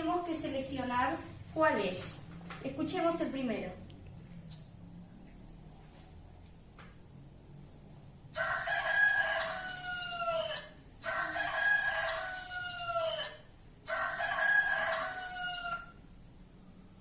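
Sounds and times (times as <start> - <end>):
rooster crowing: 8.3 - 16.2.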